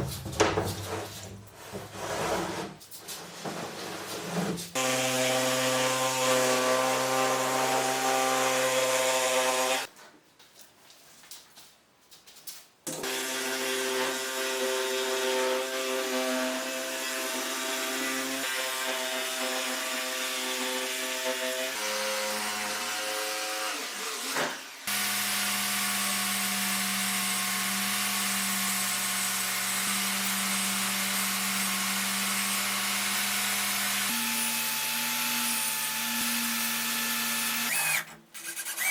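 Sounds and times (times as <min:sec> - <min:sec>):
power tool working wood: 0:04.8 - 0:09.9, 0:12.9 - 0:38.9.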